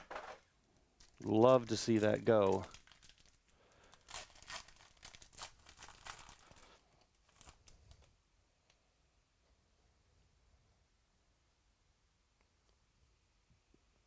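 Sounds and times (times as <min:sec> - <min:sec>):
foil wrapper crinkling and tearing: 0:01.0 - 0:08.1.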